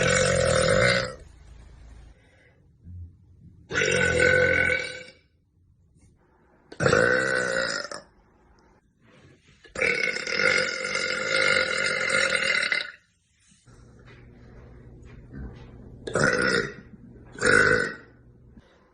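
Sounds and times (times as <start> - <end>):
woman burping: 0.0 - 1.2, 3.7 - 5.2, 9.8 - 13.0, 16.1 - 18.1.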